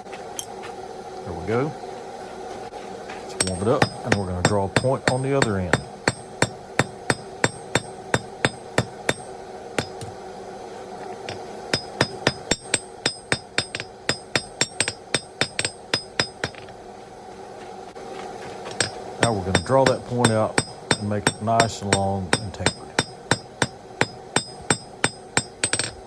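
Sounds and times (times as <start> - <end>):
hammer striking steel on anvil: 3.4 - 10.2, 11.2 - 16.7, 18.7 - 26.0.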